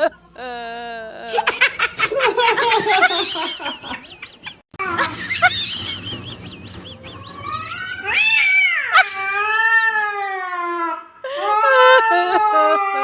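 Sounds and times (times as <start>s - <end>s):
cat yowling: 7.6s - 10.9s.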